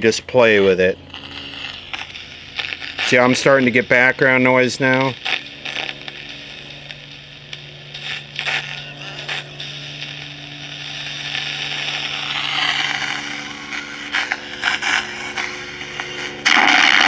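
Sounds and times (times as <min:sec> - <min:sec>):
low hum: 0:00.0 - 0:17.0
radio static hiss: 0:00.0 - 0:17.0
radio station audio: 0:00.0 - 0:17.0
static crackles: 0:00.0 - 0:17.0.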